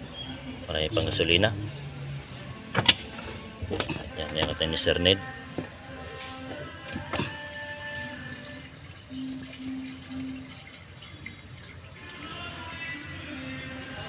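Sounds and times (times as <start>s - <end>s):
background music with held notes: 0.0s - 14.0s
liquid dripping and trickling: 7.1s - 14.0s.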